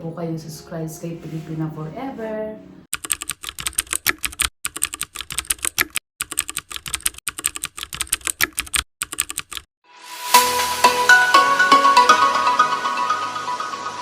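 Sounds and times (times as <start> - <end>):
computer keyboard typing: 2.9 - 9.7.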